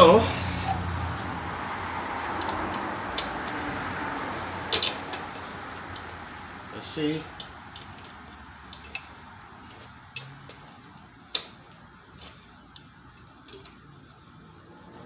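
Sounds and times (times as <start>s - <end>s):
metal clicks and clinks: 2.4s - 3.6s, 4.7s - 6.2s, 7.3s - 9.2s, 10.2s - 11.6s.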